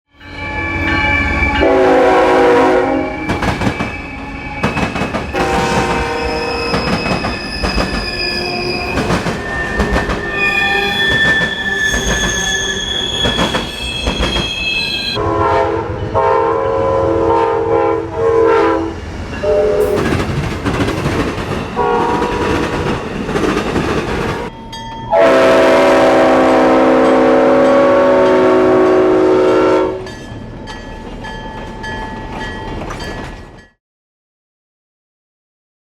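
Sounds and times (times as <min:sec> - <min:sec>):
railcars clattering past: 0:00.1 - 0:17.8, 0:18.4 - 0:33.8
wheels squealing on rails: 0:00.2 - 0:15.2
train horn blasts: 0:00.6 - 0:03.6, 0:05.3 - 0:20.0, 0:21.8 - 0:22.7, 0:25.1 - 0:30.1.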